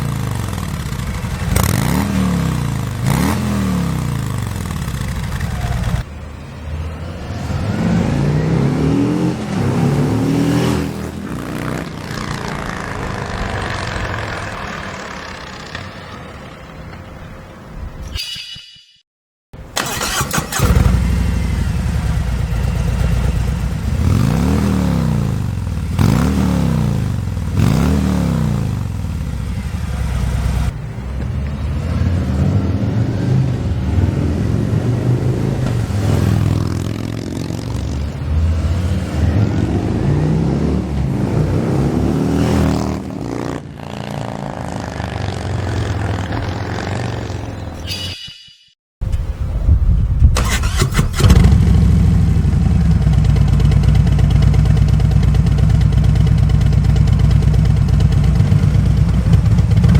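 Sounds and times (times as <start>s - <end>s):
motorcycle engine starting: 19.6s - 30.7s, 50.2s - 59.9s
motorcycle engine idling: 19.8s - 24.2s, 51.5s - 59.9s
motorcycle engine rev blips: 19.8s - 30.7s.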